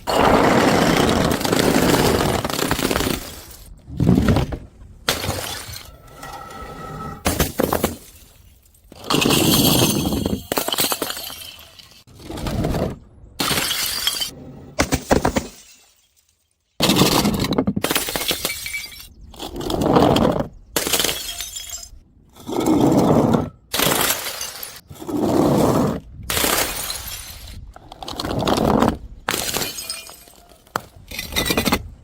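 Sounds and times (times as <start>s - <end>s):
glass bottles smashing: 7.3s - 12.1s, 13.4s - 17.1s, 17.9s - 19.1s, 20.8s - 22.0s, 23.8s - 24.8s, 26.4s - 27.5s, 29.3s - 30.5s.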